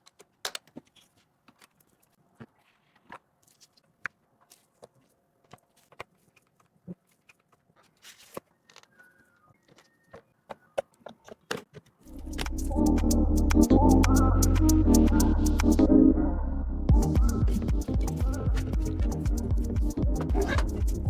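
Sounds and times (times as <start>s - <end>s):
electronic music with heavy bass: 12.2s - 21.0s.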